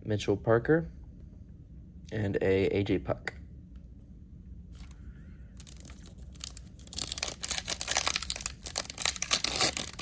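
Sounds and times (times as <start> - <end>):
foil wrapper tearing and crinkling: 5.6 - 10.0.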